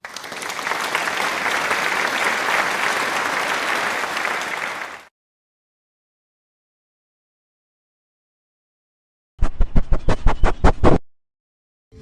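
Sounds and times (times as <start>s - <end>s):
crowd applauding: 0.0s - 5.1s.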